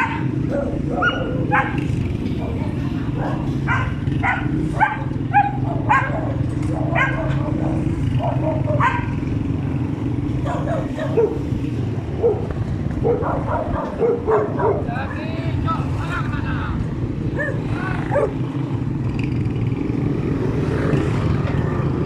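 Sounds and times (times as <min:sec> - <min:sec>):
dog barking and yipping: 0:00.0 - 0:09.3, 0:10.4 - 0:15.0, 0:17.3 - 0:18.4.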